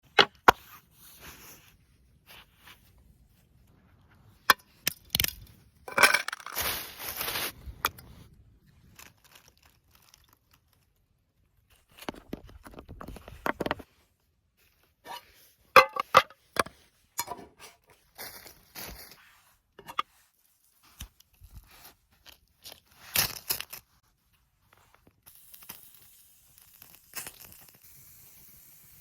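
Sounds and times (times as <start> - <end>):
soft rustle: 0.6 - 4.4, 6.4 - 12.1.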